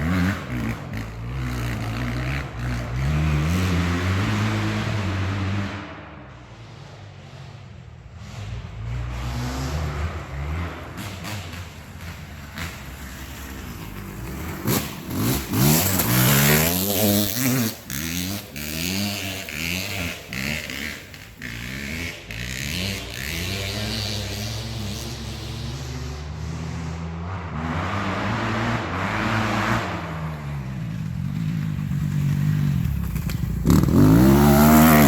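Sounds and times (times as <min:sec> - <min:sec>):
motocross bike engine revving: 0:00.0 - 0:35.0.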